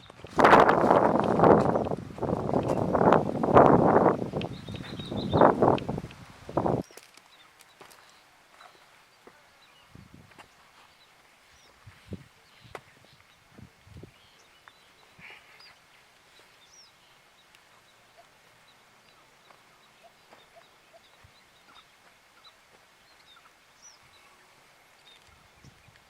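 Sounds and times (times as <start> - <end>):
faint bird chirps: 4.4 - 5.6, 6.8 - 26.0.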